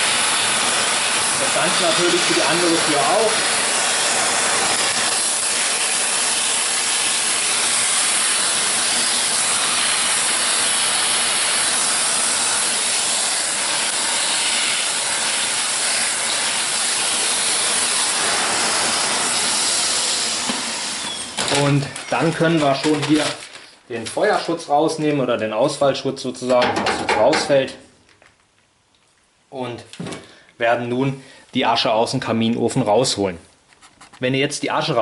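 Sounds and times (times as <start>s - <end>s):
vacuum cleaner running: 0.0s - 23.2s.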